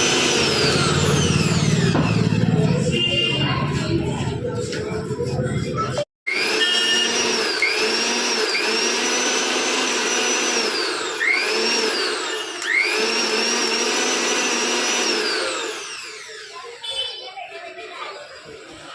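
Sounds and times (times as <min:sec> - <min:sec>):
mixer grinder motor whine: 0:00.0 - 0:02.7, 0:06.2 - 0:16.7.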